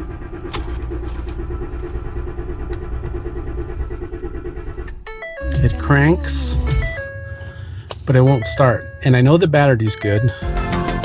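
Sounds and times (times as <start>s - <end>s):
engine cranking without starting: 0.0s - 5.4s.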